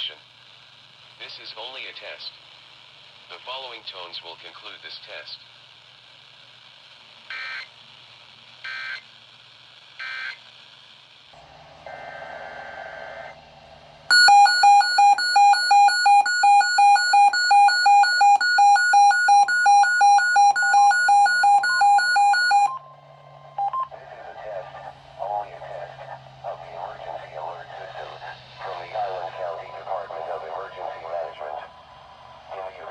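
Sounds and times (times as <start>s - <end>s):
two-tone digital data bursts: 14.1s - 22.8s
rapid electronic beeping: 14.1s - 23.0s, 23.6s - 32.9s.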